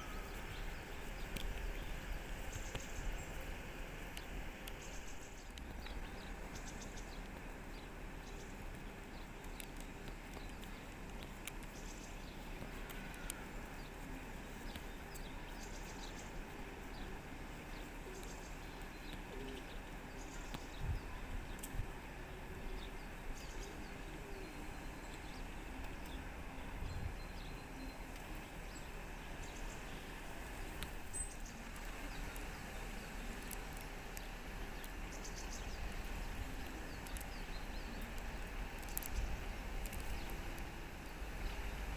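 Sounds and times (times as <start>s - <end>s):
faint bird chirps: 0.0s - 3.6s, 11.6s - 40.4s
low rumble and hiss: 0.0s - 41.9s.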